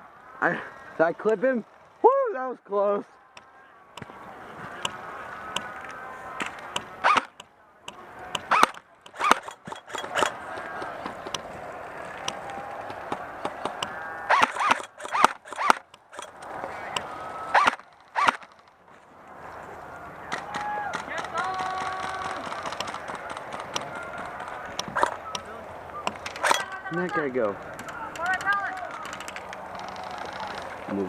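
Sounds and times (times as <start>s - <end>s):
distant shouting: 0.0s - 18.6s, 19.2s - 31.0s
airsoft gun shots: 7.0s - 7.4s, 8.4s - 10.8s, 13.6s - 15.8s, 17.5s - 18.5s.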